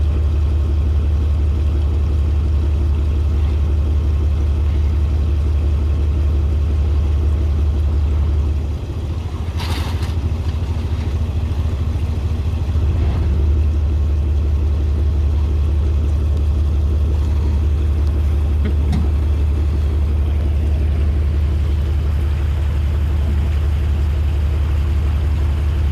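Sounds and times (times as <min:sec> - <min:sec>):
vehicle engine droning: 0:00.0 - 0:25.9
short rattle: 0:09.0 - 0:14.0, 0:16.0 - 0:23.7.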